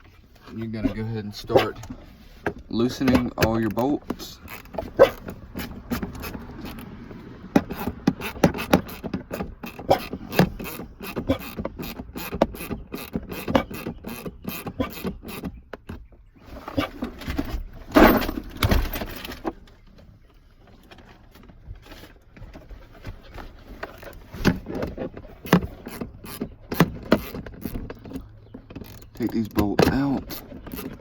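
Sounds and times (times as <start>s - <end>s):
scraping rustle: 0.0s - 11.6s, 16.4s - 31.0s
ratchet clicking: 4.4s - 5.3s, 7.7s - 15.4s, 25.4s - 31.0s.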